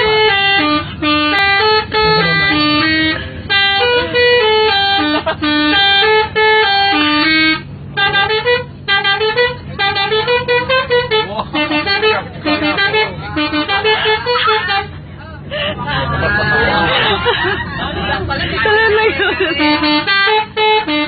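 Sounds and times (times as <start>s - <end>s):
multi-tone musical air horn: 0.0s - 15.0s, 19.6s - 21.0s.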